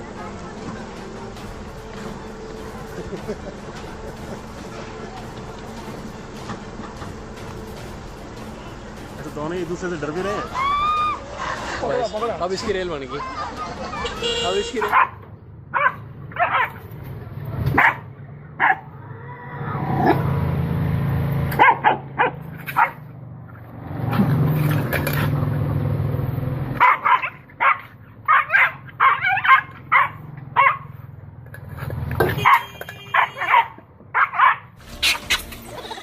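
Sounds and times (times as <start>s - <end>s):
dog barking: 14.8s - 16.8s, 17.7s - 18.9s, 21.6s - 23.0s, 26.8s - 30.9s, 32.4s - 34.7s.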